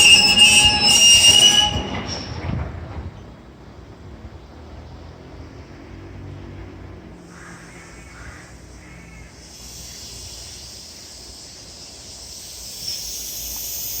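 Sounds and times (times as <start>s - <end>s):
high hiss from train: 0.0s - 2.6s, 5.4s - 14.0s
freight train rumbling: 0.0s - 14.0s
crow cawing: 7.3s - 9.3s.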